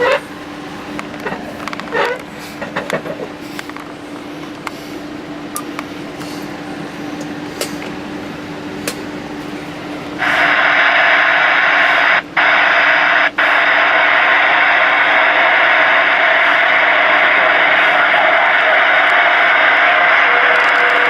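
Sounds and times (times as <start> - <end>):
low hum: 9.6 - 21.0
loud radio static hiss: 10.1 - 21.0.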